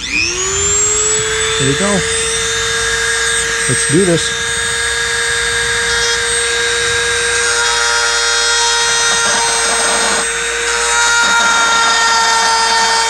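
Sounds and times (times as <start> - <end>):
rotary tool high-pitched whine: 0.0 - 13.0.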